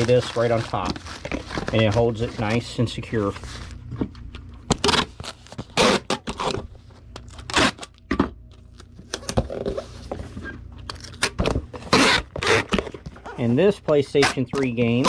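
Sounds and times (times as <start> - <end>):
bubble wrap crinkling: 0.0 - 3.9.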